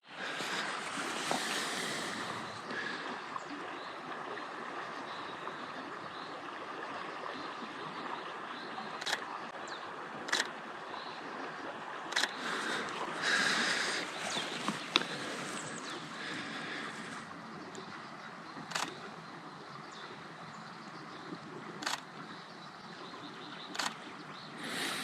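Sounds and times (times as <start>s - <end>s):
outdoor background noise: 0.0s - 25.0s
loud rustle: 0.3s - 2.4s
sharp clicks: 9.0s - 9.3s, 10.3s - 10.5s, 12.1s - 12.4s, 18.6s - 19.0s, 21.8s - 22.1s, 23.7s - 24.0s.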